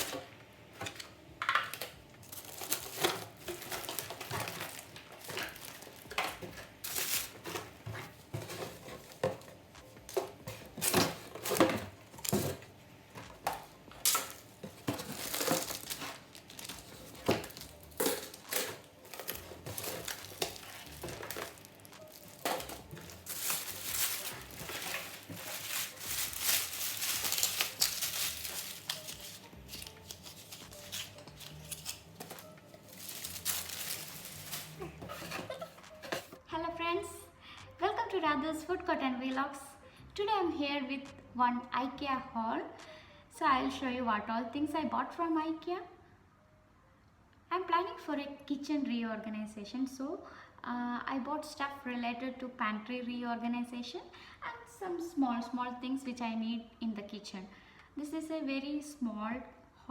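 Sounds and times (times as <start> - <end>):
kitchen items knocking and clattering: 0.0 - 36.4
packaging crinkling and rustling: 1.6 - 12.6, 13.3 - 36.4.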